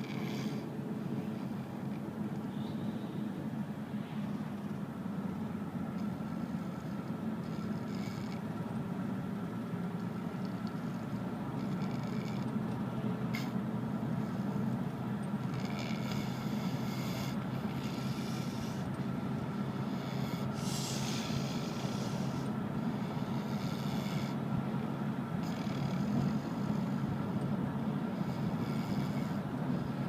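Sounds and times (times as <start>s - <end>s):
man snoring: 0.0s - 0.6s, 11.6s - 12.5s, 15.4s - 19.0s, 19.7s - 24.4s, 25.4s - 27.2s, 28.1s - 30.0s.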